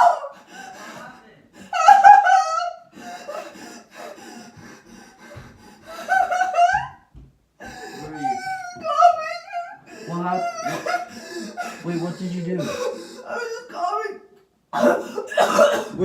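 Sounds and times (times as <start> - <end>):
person gagging: 7.6 - 14.2
raspy hacking coughs: 14.7 - 16.0.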